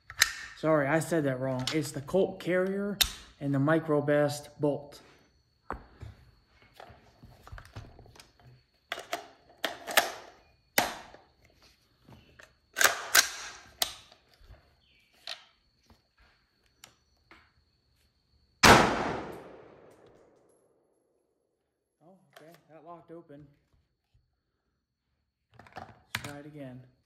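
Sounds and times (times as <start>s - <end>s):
gunshot with echo: 18.6s - 19.9s.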